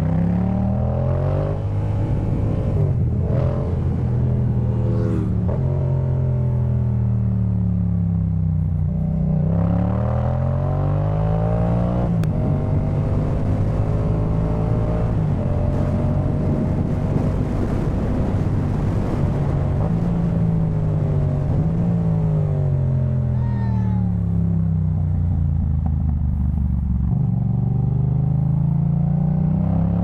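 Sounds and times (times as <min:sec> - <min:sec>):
motorcycle engine revving: 0:00.0 - 0:07.9.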